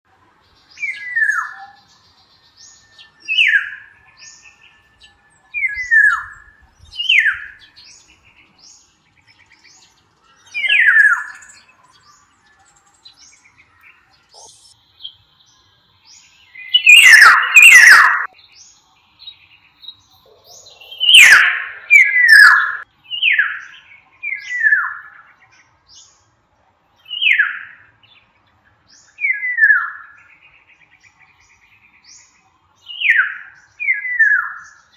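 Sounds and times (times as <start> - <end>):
loud harsh bird calls: 5.6 - 12.4, 16.5 - 18.3, 20.2 - 25.4
bird call sliding downward: 20.9 - 22.8.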